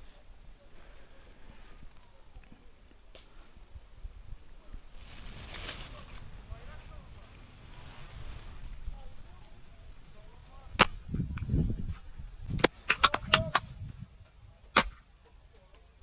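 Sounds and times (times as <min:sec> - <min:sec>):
airsoft guns firing: 0:10.8 - 0:11.0, 0:12.6 - 0:13.7, 0:14.8 - 0:15.0.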